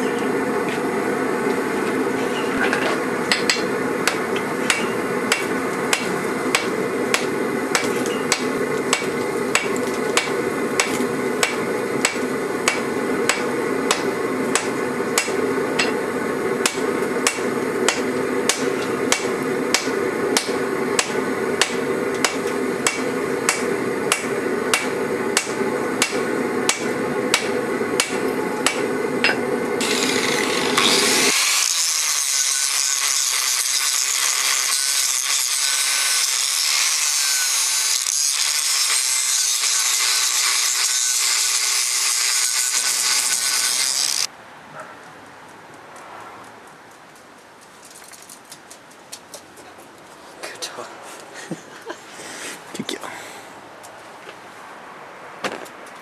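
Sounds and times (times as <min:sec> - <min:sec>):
steady background roar: 0:00.0 - 0:31.4
hammer blows on hot steel: 0:02.3 - 0:31.4.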